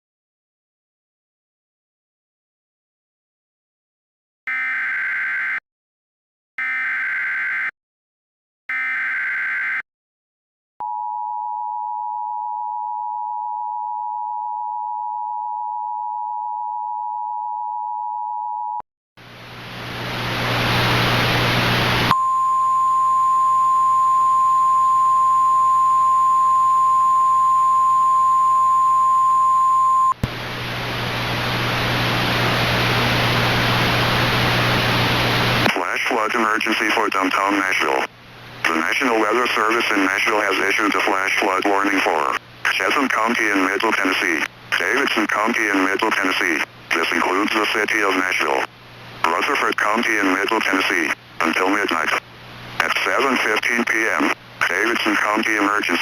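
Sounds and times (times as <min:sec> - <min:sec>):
static hiss: 0:19.3 - 0:22.1, 0:30.2 - 0:35.7
two-tone attention signal: 0:22.1 - 0:30.2
weather-radio alert tone: 0:22.1 - 0:30.2, 0:35.6 - 0:52.2, 0:52.8 - 0:56.0.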